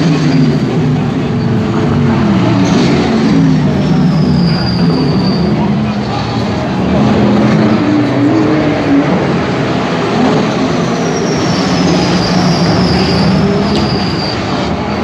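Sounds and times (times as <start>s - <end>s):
race car engine whining: 0.0s - 15.0s.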